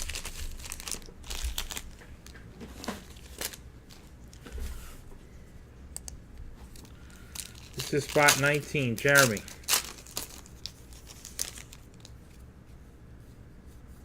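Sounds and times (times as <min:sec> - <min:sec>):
card pack wrappers crinkling: 0:00.0 - 0:04.5, 0:06.6 - 0:12.2
cards being handled: 0:06.6 - 0:12.4.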